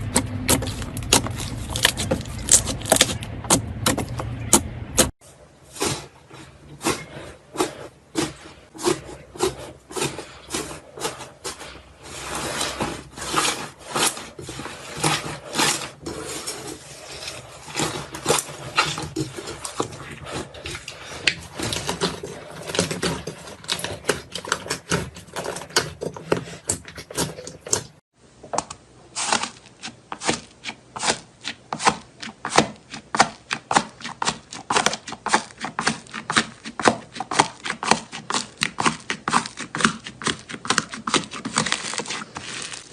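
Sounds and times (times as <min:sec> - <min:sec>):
crunchy slime crackling: 0:29.1 - 0:42.9.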